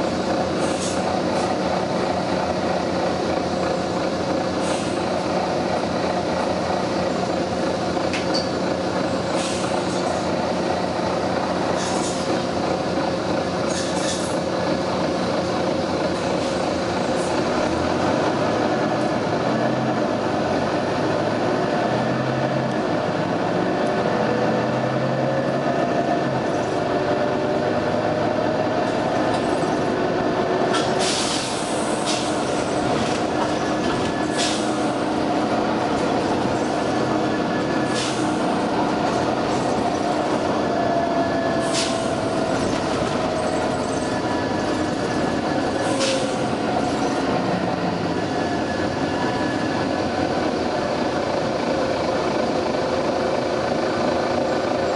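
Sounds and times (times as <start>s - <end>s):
bus engine running with whine: 0.0s - 54.9s
compressed air hisses: 30.8s - 32.4s, 34.3s - 34.8s.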